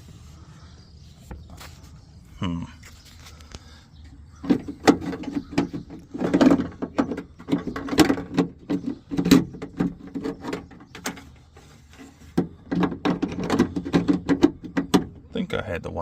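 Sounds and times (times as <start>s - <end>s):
door latch hardware knocking and rattling: 4.4s - 11.3s, 12.4s - 15.3s.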